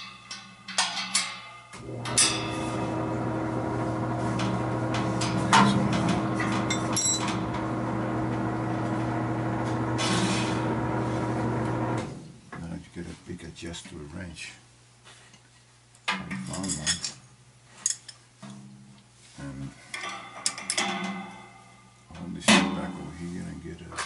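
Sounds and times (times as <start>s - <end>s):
electric motor humming: 1.8s - 12.1s.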